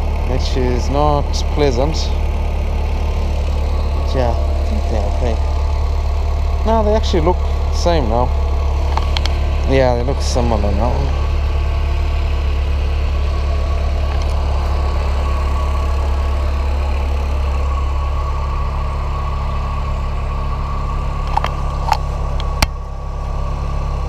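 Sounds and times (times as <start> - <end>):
car engine idling: 0.0 - 24.0
sharp clicks: 21.2 - 22.8.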